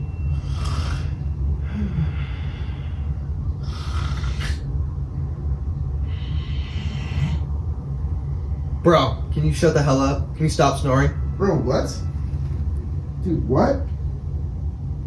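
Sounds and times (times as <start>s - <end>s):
steady low rumble: 0.0s - 15.0s
person snoring: 0.4s - 2.9s, 3.6s - 4.6s, 6.2s - 7.4s.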